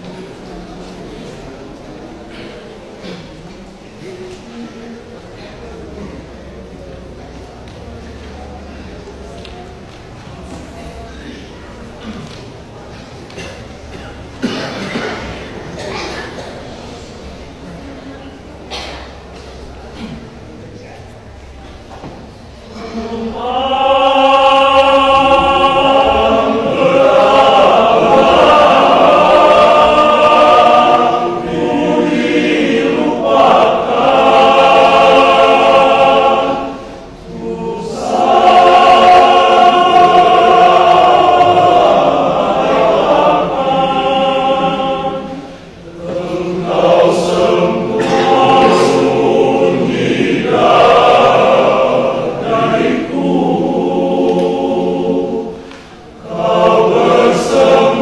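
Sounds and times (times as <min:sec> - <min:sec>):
men's choir singing: 0:12.0 - 0:20.2, 0:22.1 - 0:58.0.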